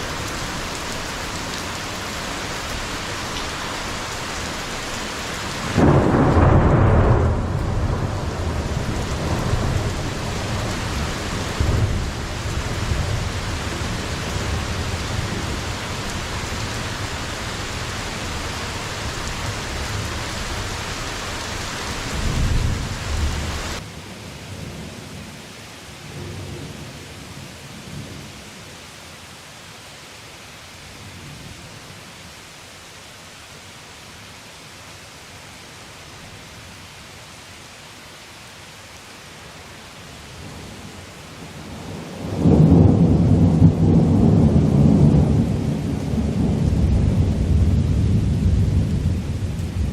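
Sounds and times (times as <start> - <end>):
heavy rain pouring: 0.0 - 49.9
thunder rumbling: 5.6 - 18.4, 22.1 - 23.8, 41.7 - 49.9.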